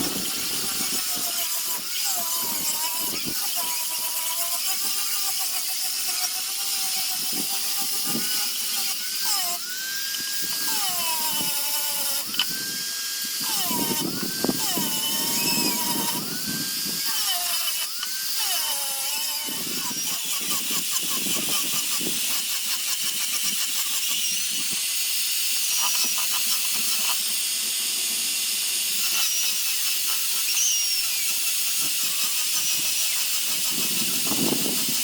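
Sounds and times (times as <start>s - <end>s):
rotary carving tool whining: 0.0s - 35.0s.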